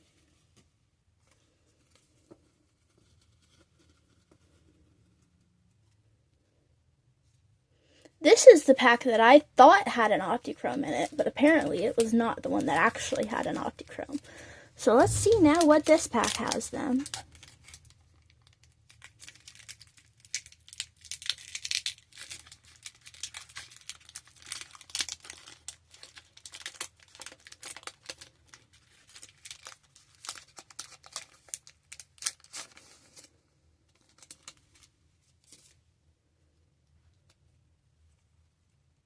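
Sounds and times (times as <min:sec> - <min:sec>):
wrapper tearing and crinkling: 0:11.0 - 0:33.3, 0:33.9 - 0:35.8.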